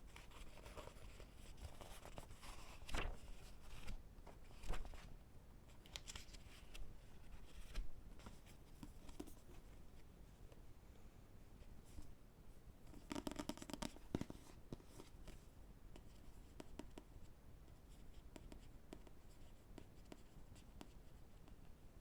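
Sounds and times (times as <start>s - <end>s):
light tapping on books: 12.9s - 15.4s.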